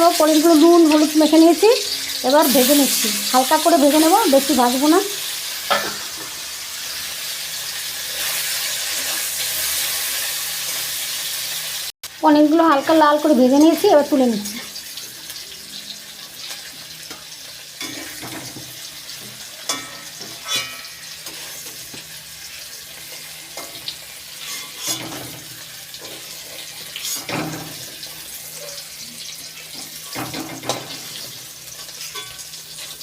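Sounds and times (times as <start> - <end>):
hot oil sizzling: 0.0 - 33.0
spatula knocking and scraping pan: 5.7 - 6.4, 16.4 - 22.2, 23.5 - 28.8, 29.7 - 31.4.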